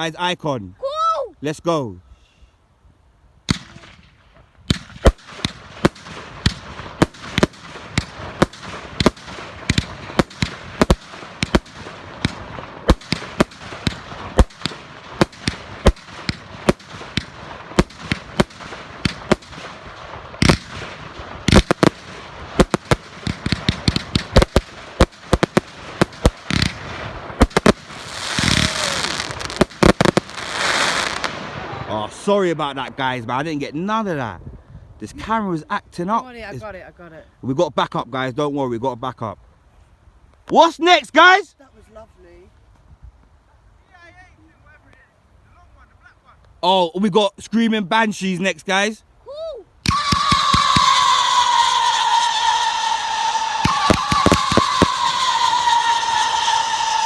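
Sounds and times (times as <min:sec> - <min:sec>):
firework bangs: 0:03.4 - 0:33.0, 0:49.8 - 0:57.0
firework crackling: 0:03.4 - 0:33.3, 0:49.8 - 0:57.0.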